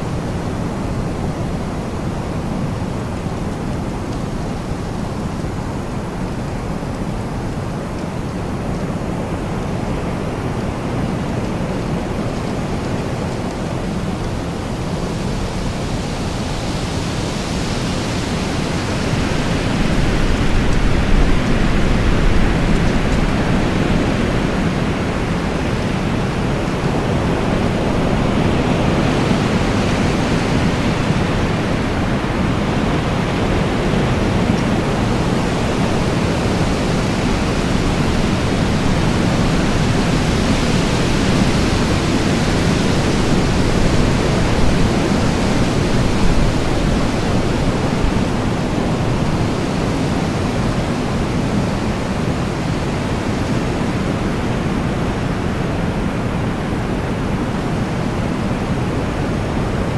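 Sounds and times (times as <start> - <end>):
strong storm wind blowing: 0.0 - 59.9.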